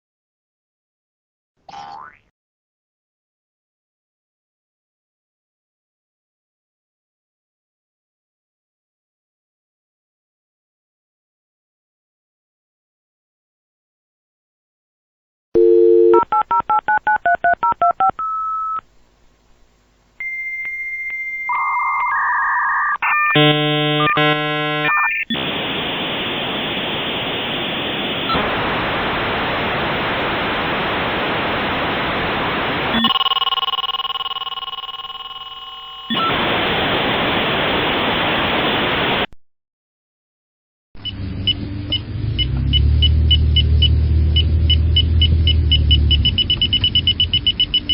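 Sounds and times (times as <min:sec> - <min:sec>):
static-like hiss: 0:22.7 - 0:33.2, 0:36.1 - 0:39.3
short pitched electronic beeps: 0:23.0 - 0:25.5
steady multi-tone hum: 0:23.0 - 0:39.3.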